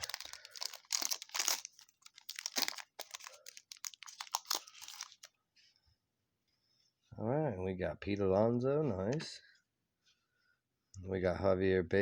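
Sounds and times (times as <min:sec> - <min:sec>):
wrapper crinkling and tearing: 0:00.0 - 0:05.3.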